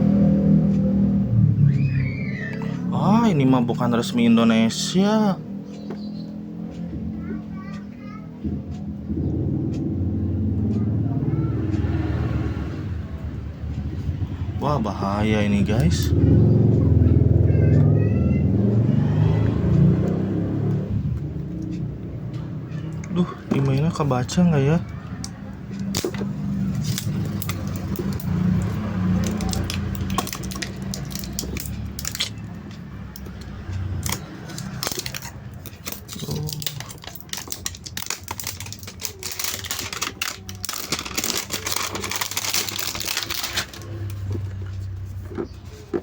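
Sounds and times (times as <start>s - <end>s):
packaging clicks and rustles: 25.8s - 32.6s, 33.2s - 46.0s
packaging crinkling: 26.8s - 32.4s, 34.0s - 44.5s.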